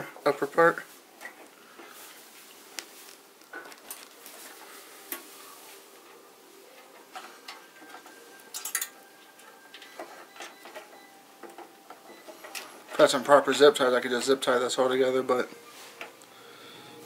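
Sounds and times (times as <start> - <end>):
computer cables clicking and rustling: 1.2 - 5.4, 6.0 - 14.5.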